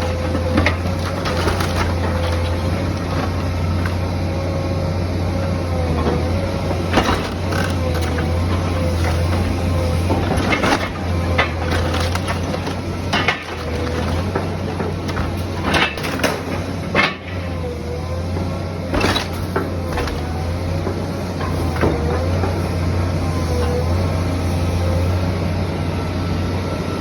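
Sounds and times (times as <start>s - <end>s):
heavy machine engine drone: 0.0s - 27.0s.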